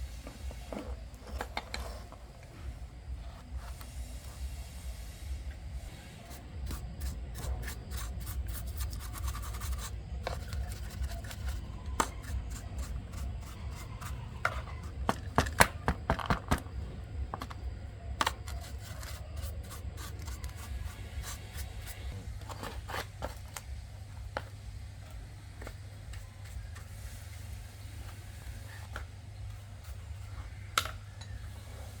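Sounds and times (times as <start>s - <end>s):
steady low hum: 0.0s - 32.0s
tools scraping and clicking on metal: 6.3s - 16.7s, 18.2s - 23.7s.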